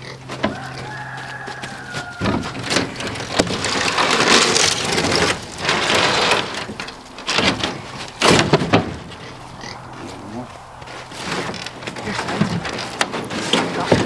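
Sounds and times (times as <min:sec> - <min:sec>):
wooden boards scraping: 0:00.0 - 0:14.0
wooden boards knocking: 0:01.6 - 0:09.2, 0:11.0 - 0:14.0.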